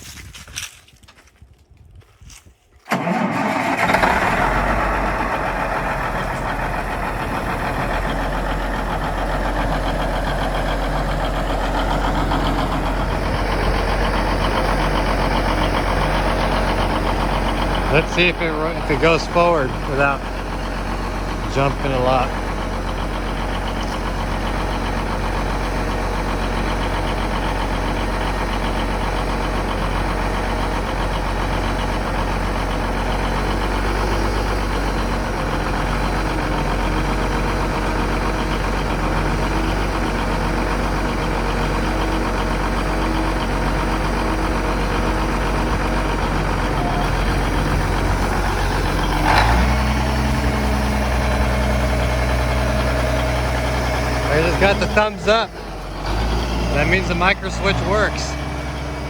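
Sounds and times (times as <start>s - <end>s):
tractor diesel engine running: 2.8s - 59.0s.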